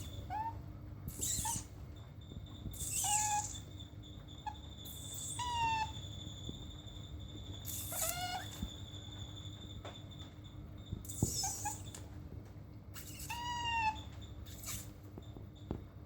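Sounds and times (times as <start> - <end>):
otter squeaky calls: 0.0 - 9.4, 10.8 - 12.1, 12.9 - 15.0.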